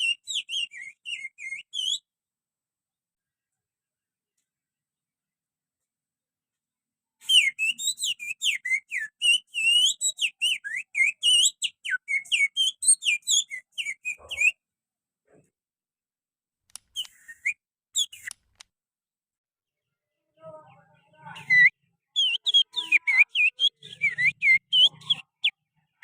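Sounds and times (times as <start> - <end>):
finger whistling birdsong: 0.0 - 2.1, 7.2 - 14.6, 16.7 - 18.4, 21.2 - 26.0.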